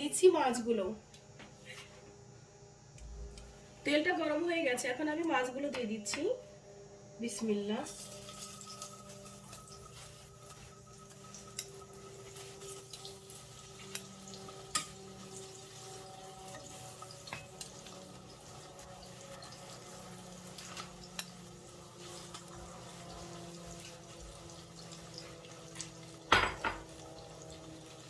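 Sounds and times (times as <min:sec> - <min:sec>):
faint steady hum: 0:00.0 - 0:28.0
fish sizzling in hot oil: 0:07.8 - 0:28.0.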